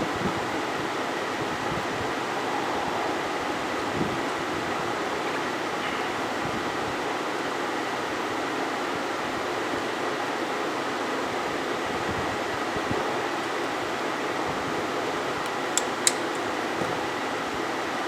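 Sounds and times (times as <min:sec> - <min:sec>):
rushing blown air: 0:00.0 - 0:07.8, 0:11.9 - 0:18.0.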